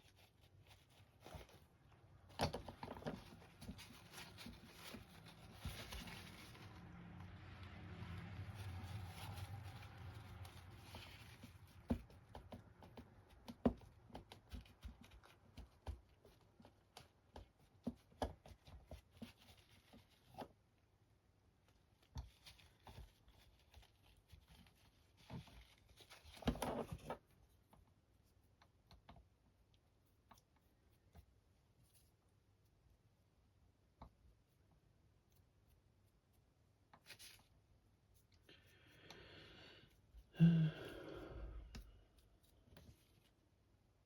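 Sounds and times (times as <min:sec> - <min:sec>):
quiet rustling: 0:00.0 - 0:39.1, 0:41.5 - 0:44.0
painting materials clicking and tapping: 0:09.6 - 0:20.6.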